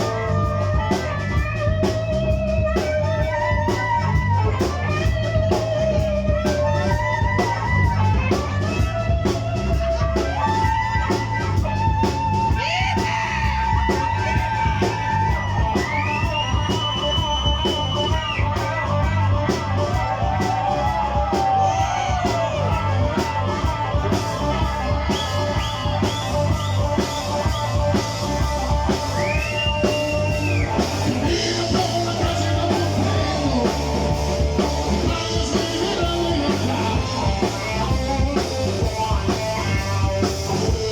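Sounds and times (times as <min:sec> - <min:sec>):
blues-rock band playing: 0:00.0 - 0:40.9
electric guitar long held notes: 0:00.0 - 0:40.9.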